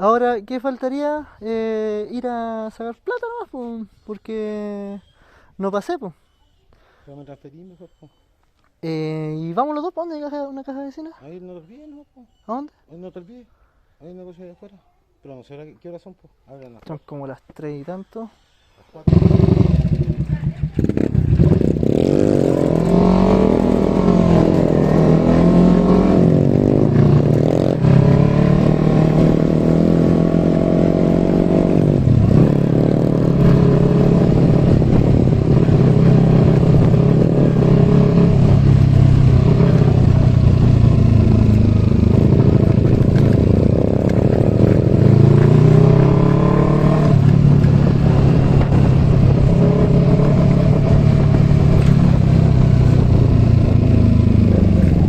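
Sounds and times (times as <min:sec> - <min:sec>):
motorcycle engine accelerating: 0:19.1 - 0:55.0.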